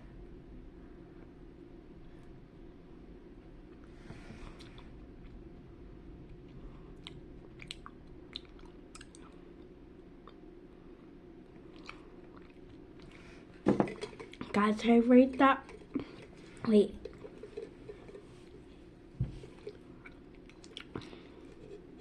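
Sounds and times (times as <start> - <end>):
low room hum: 0.0 - 22.0
chewing gummy candy: 6.4 - 10.4, 11.6 - 13.2, 19.5 - 22.0
wet mouth clicks: 7.0 - 9.3, 11.8 - 13.1, 19.6 - 21.1.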